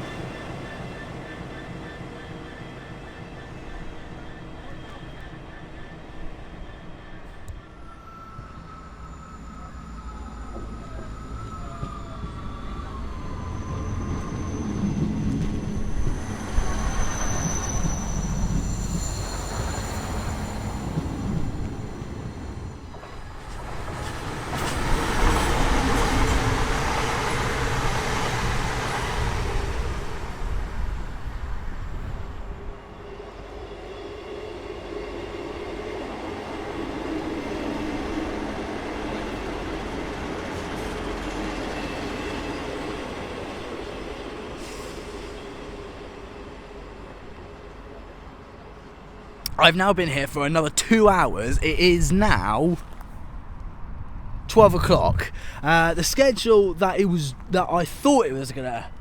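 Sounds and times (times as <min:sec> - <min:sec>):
faint high wheel squeal: 0:00.0 - 0:23.0
train wheels rumbling on rails: 0:10.4 - 0:49.3.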